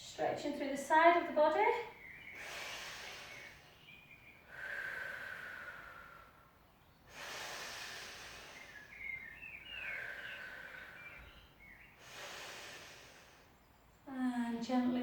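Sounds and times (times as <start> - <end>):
woman breathing slowly: 2.0 - 13.7.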